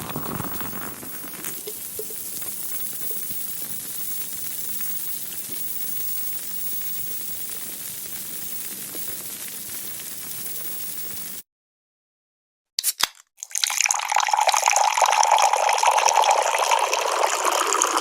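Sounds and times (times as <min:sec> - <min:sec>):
sizzling hiss with crackle: 0:00.0 - 0:11.4.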